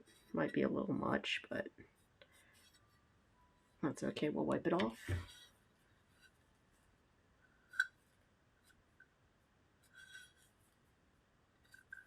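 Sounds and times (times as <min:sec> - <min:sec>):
soft rub: 0:09.8 - 0:10.9.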